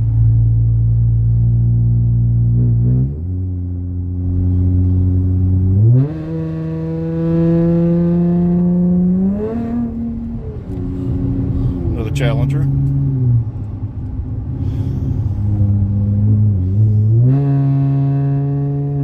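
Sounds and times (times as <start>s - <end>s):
car exhaust drone: 0.0s - 19.0s.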